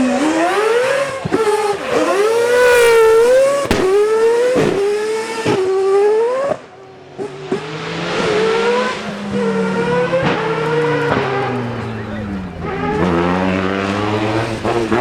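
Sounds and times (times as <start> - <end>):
rally car engine revving: 0.0 - 15.0
lower engine note: 7.9 - 15.0.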